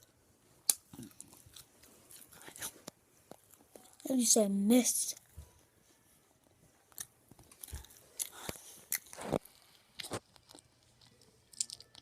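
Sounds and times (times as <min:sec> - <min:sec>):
chewing fried dough: 0:06.9 - 0:12.0.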